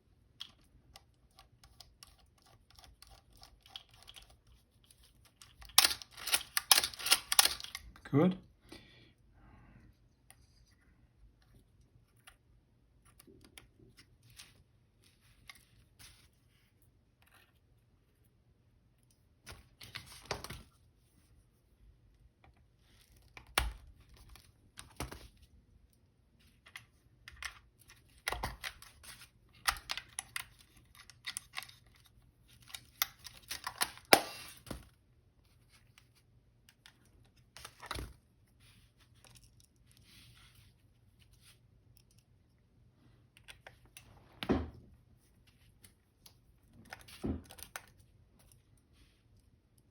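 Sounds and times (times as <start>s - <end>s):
small metal parts clicking: 5.4s - 7.9s.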